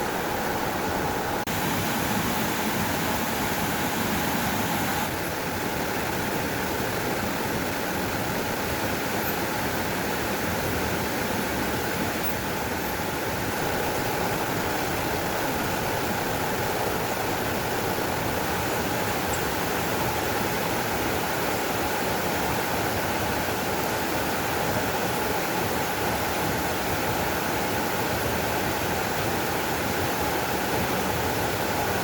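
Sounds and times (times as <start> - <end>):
flowing water rushing: 0.0 - 32.0.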